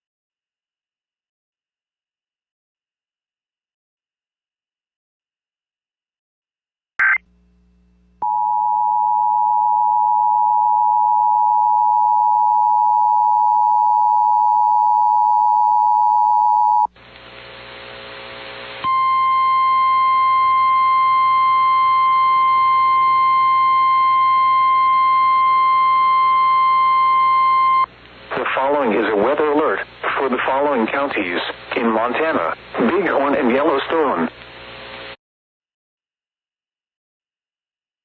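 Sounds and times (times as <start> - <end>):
static hiss: 16.9 - 18.8, 27.9 - 35.2
steady warning alarm tone: 18.9 - 27.9.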